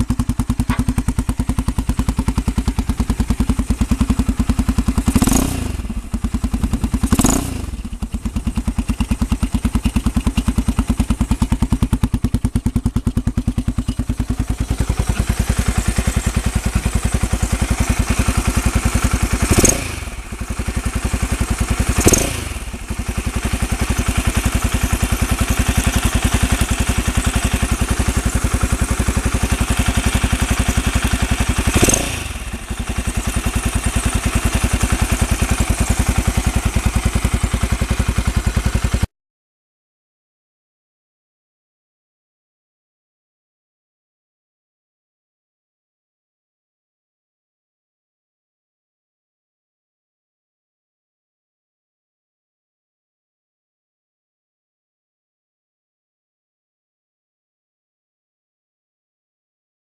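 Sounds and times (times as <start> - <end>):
motorcycle engine idling: 0.0 - 39.1
throttle blips revving engine: 5.0 - 6.0, 7.0 - 7.9, 18.9 - 20.6, 21.6 - 26.8, 31.6 - 32.5.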